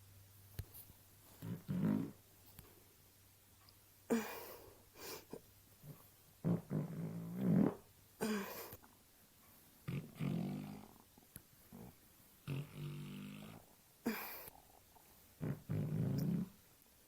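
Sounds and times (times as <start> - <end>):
person farting: 1.4 - 2.2, 6.4 - 8.4, 15.4 - 16.5.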